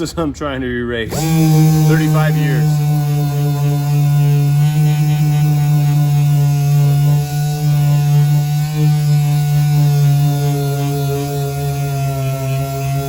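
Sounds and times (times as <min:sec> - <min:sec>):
orbital sander humming: 0:01.1 - 0:13.0.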